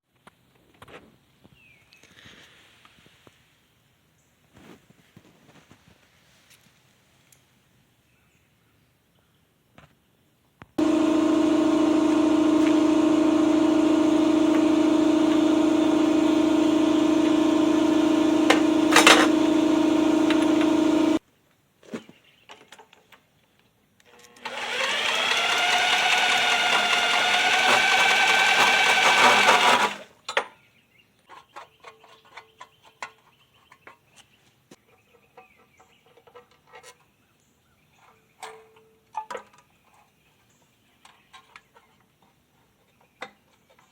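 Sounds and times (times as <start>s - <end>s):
small mower engine running: 10.8s - 21.2s, 24.2s - 30.1s.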